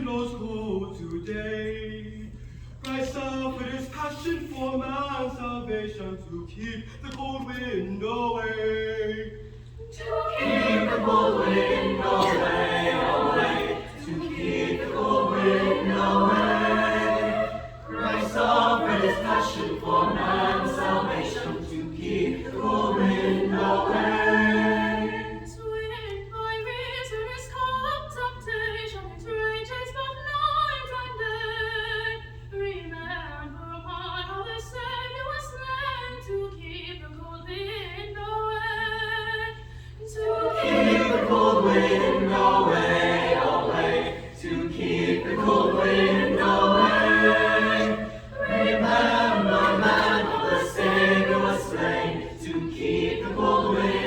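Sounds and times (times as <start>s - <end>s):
choir singing a cappella: 9.8s - 26.2s, 40.0s - 54.0s.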